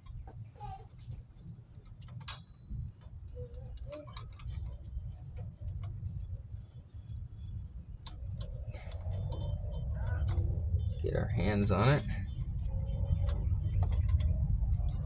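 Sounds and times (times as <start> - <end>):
light metallic clicks and clinks: 1.9 - 6.0
steady low rumble: 4.4 - 15.0.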